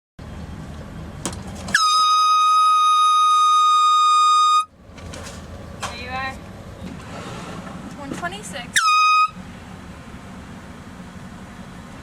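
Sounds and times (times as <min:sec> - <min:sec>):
air horn blast: 0:01.7 - 0:04.7, 0:08.7 - 0:09.4.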